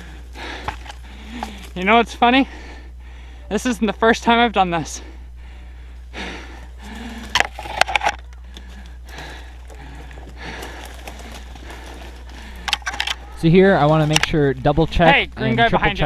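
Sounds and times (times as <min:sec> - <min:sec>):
person breathing hard: 0:00.0 - 0:01.8, 0:02.4 - 0:03.6, 0:04.8 - 0:13.4
low steady hum: 0:00.0 - 0:16.0.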